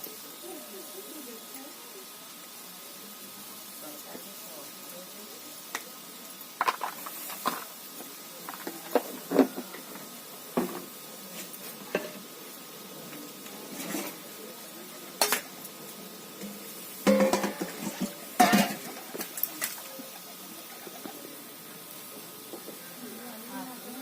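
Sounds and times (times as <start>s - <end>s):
metal utensils clinking on cookware: 11.9s - 12.2s, 15.1s - 15.8s, 16.4s - 19.8s.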